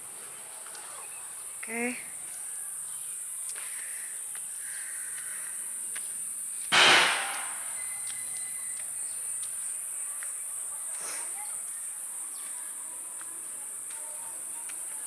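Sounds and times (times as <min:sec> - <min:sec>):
high-pitched insect chorus: 0:00.0 - 0:15.0
loud harsh sound: 0:06.7 - 0:07.8.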